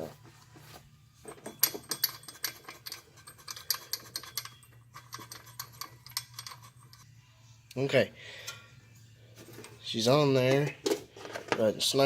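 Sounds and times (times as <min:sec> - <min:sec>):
metallic clicks taps and scrapes: 0:01.4 - 0:07.1.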